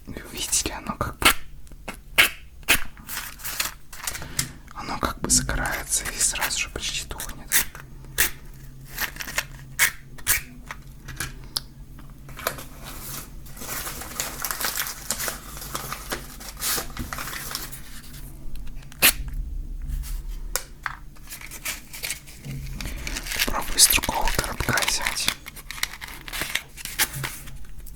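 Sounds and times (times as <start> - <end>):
match scratching on matchbox: 5.5 - 10.8, 23.0 - 27.2.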